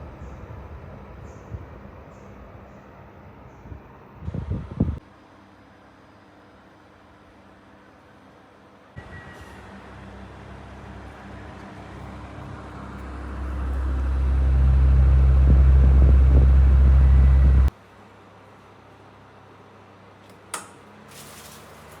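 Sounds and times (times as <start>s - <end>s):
box fan running: 9.0s - 17.7s.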